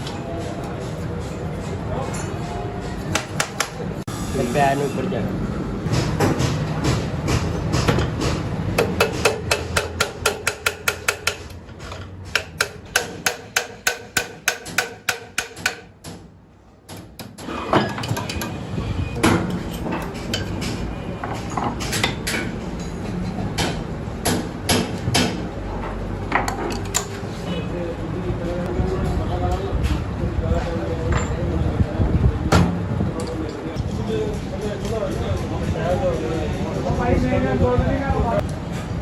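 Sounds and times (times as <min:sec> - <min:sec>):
metal-on-metal knocking: 0:05.9 - 0:16.3.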